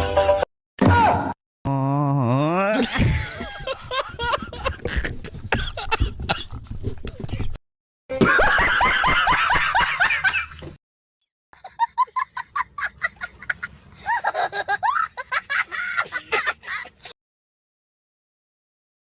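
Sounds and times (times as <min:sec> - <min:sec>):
high-pitched cackling laugh: 0:08.1 - 0:10.7, 0:11.6 - 0:17.2
burst of laughter: 0:08.2 - 0:10.7.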